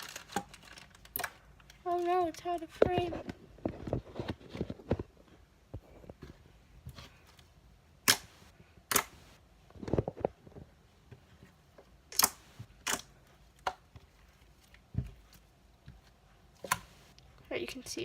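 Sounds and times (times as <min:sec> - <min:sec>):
slime squishing and popping: 0:12.1 - 0:14.0.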